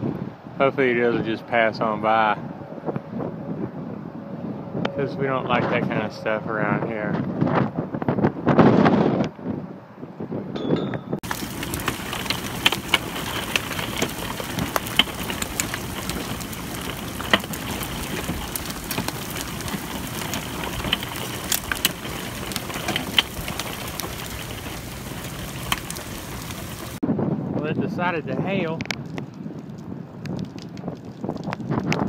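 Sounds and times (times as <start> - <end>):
hailstones striking hard surfaces: 11.2 - 27.0
heavy rain hiss: 11.2 - 27.0.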